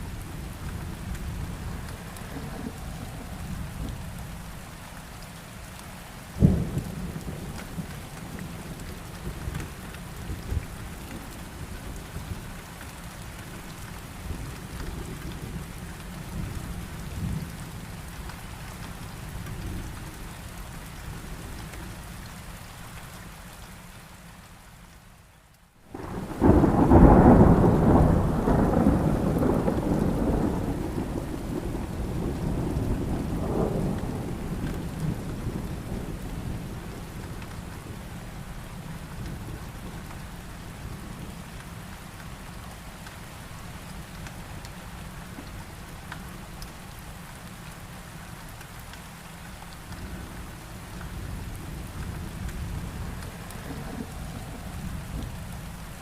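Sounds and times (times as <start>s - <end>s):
heavy rain: 0.0s - 56.0s
thunder rumbling: 0.4s - 4.6s, 25.9s - 38.1s, 49.9s - 56.0s.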